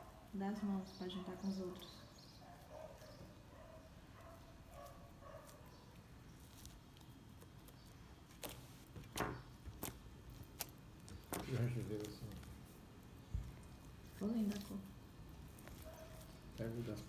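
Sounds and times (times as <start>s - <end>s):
slime being pulled: 6.4s - 12.8s.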